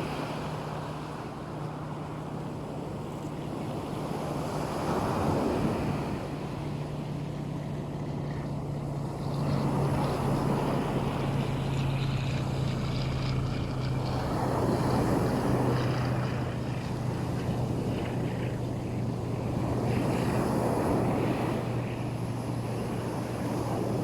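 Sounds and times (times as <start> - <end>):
boat engine drone: 0.0 - 24.0.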